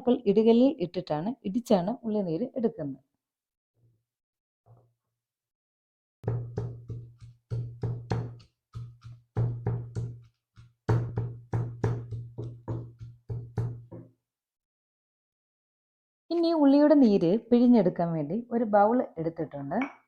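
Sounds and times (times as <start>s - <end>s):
pestle pounding in stone mortar: 6.2s - 14.1s.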